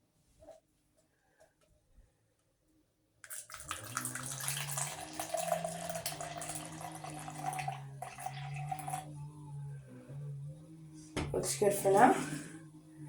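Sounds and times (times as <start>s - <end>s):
soda fizzing as poured: 3.3s - 9.0s.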